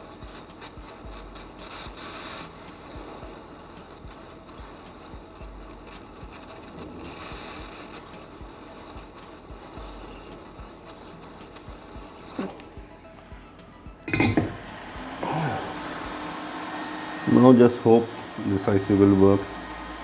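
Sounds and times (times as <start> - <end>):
tweezers clicking and scraping: 0.0 - 12.7
steady hiss: 0.0 - 20.0.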